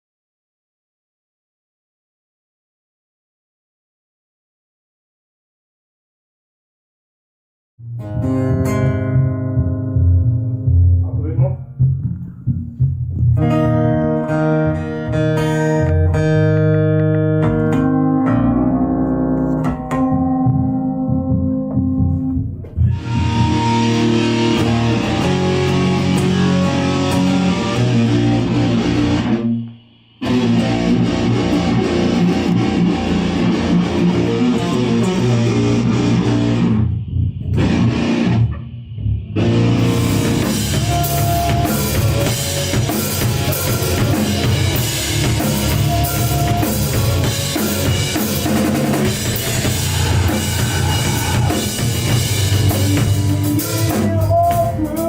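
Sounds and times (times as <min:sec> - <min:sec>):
rock band playing live: 0:13.2 - 0:29.5, 0:30.2 - 0:36.9, 0:37.5 - 0:38.5, 0:39.4 - 0:55.0.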